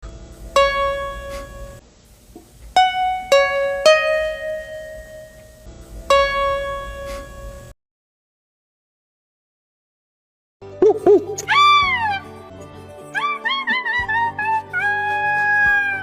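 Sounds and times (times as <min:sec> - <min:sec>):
plucked string notes: 0:00.0 - 0:01.8, 0:02.4 - 0:07.7, 0:10.6 - 0:14.5.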